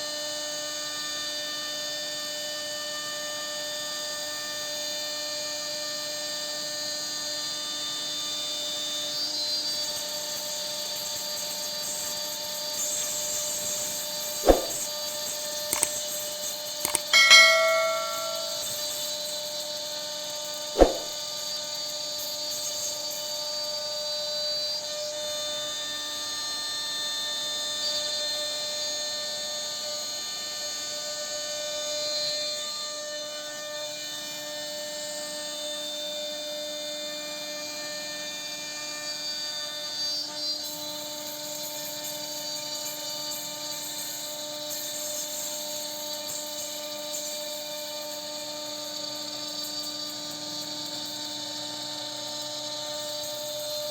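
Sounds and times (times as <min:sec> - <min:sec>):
cnc router spindle whine: 0:00.2 - 0:17.1, 0:21.2 - 0:53.9
sharp click: 0:14.4 - 0:14.8, 0:15.7 - 0:16.0, 0:16.8 - 0:18.9, 0:20.8 - 0:21.2.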